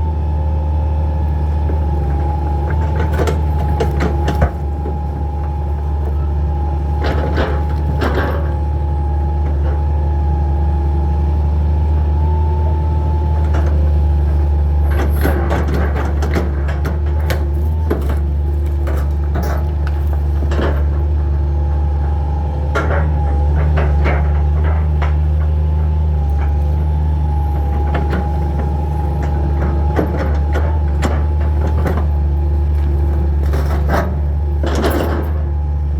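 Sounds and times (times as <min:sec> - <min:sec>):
excavator diesel engine: 0:00.0 - 0:35.9
wood knocking and cracking: 0:01.6 - 0:08.6.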